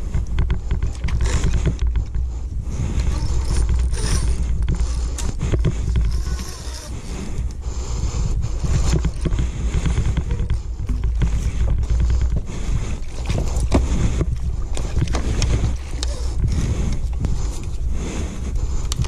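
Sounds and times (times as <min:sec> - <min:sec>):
wind rumbling on microphone: 0:00.0 - 0:19.0.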